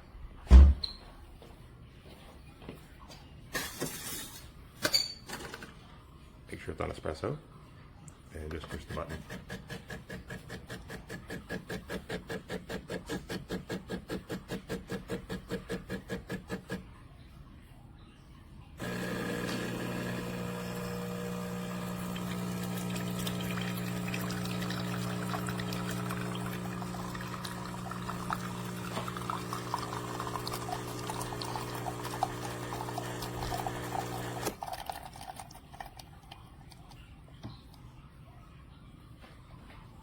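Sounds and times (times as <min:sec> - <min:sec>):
espresso machine pump humming: 0:09.0 - 0:16.8, 0:18.8 - 0:34.7
espresso pouring and dripping: 0:18.8 - 0:36.9.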